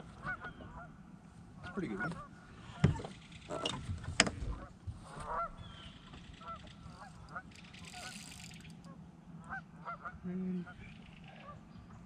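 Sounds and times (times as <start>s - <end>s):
geese honking: 0.1s - 1.0s, 1.6s - 3.7s, 4.5s - 8.2s, 9.4s - 11.6s.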